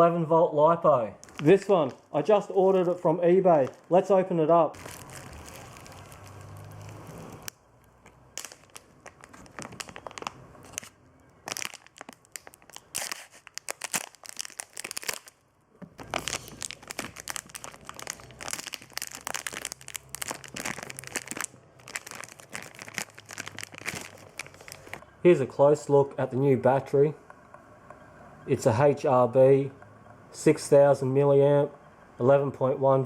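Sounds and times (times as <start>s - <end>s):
plastic packaging crinkling: 1.2s - 25.0s.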